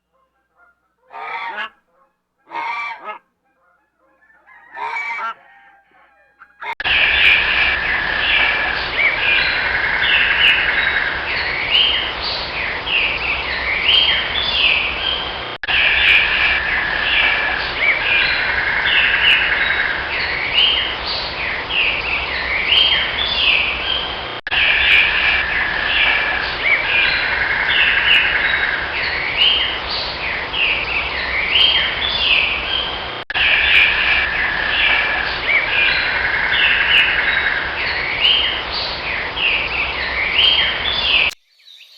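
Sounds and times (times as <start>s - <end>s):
birds chirping and trilling: 0.2s - 7.3s.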